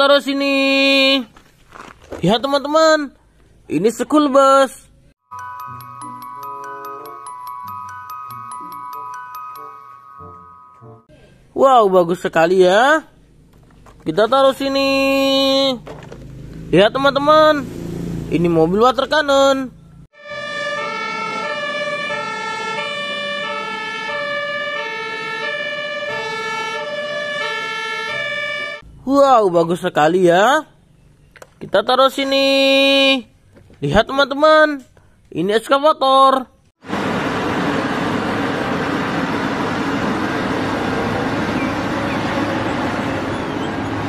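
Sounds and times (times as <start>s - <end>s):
electronic two-tone siren: 5.3s - 11.1s, 20.1s - 28.8s
excavator engine running: 36.9s - 44.0s.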